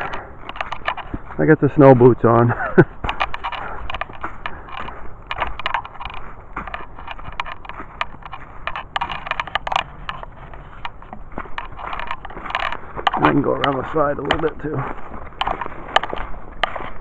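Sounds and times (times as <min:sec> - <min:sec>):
footsteps crunching on wet trail: 0:00.0 - 0:17.0.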